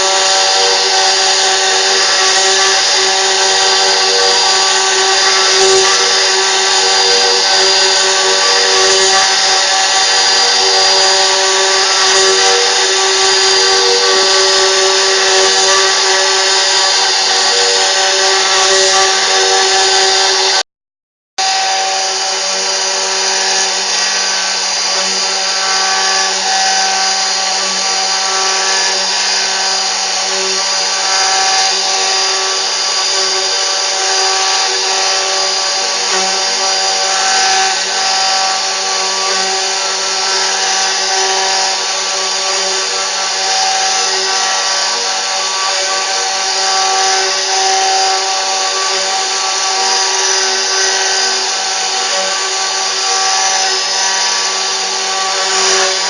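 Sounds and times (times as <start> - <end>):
router spindle whine: 0.0 - 20.6, 21.4 - 56.0.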